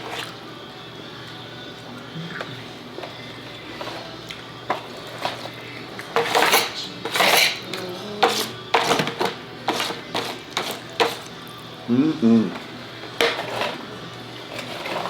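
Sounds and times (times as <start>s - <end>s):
dishes and cutlery clattering: 4.7s - 11.3s, 13.1s - 13.9s, 14.5s - 15.0s.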